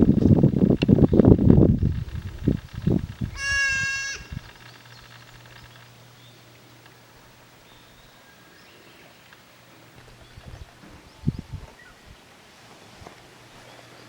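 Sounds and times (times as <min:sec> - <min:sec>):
faint low hum: 0:00.0 - 0:14.0
goat bleating: 0:03.3 - 0:04.4.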